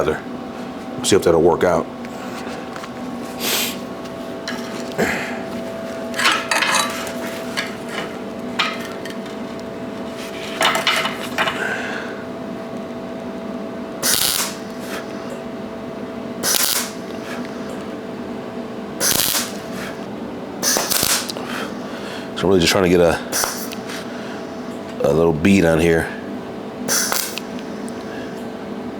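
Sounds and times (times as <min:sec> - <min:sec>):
steady machine hum: 0:00.0 - 0:28.9
arc welding bursts: 0:14.0 - 0:15.2, 0:16.4 - 0:17.7, 0:19.0 - 0:20.0, 0:20.6 - 0:21.7, 0:23.2 - 0:24.1, 0:26.8 - 0:28.0.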